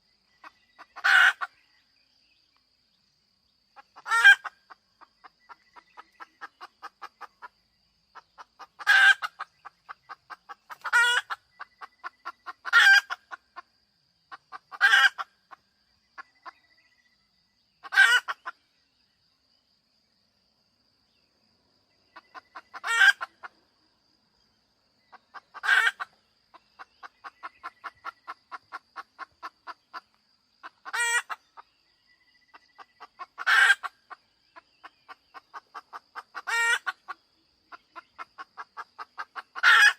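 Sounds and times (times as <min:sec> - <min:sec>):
hen cackling and squawking: 0:00.4 - 0:01.6, 0:03.8 - 0:07.5, 0:08.1 - 0:13.7, 0:14.3 - 0:15.6, 0:17.8 - 0:18.6, 0:22.1 - 0:23.6, 0:25.1 - 0:31.7, 0:32.5 - 0:39.9.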